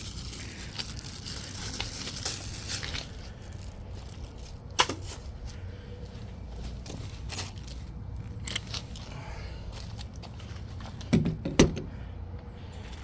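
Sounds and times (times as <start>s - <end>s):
wrapping material crinkling: 0.0s - 5.4s.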